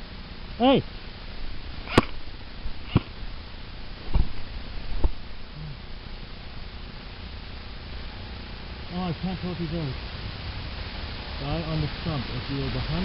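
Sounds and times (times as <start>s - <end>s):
airsoft gun shots: 1.9s - 2.2s.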